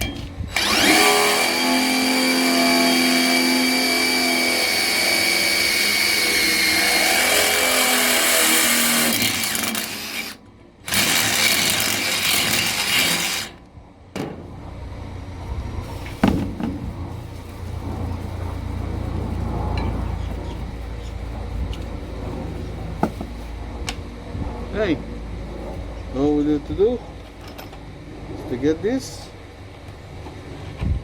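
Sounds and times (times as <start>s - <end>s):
electric drill boring through metal: 0.0s - 13.6s.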